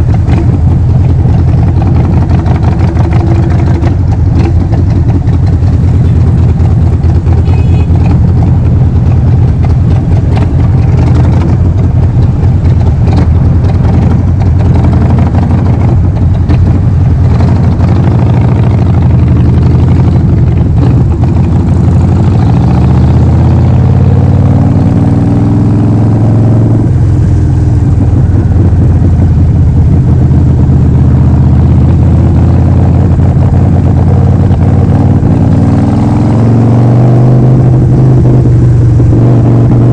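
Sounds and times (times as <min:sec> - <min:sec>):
motorcycle engine running loud: 0:00.0 - 0:39.9.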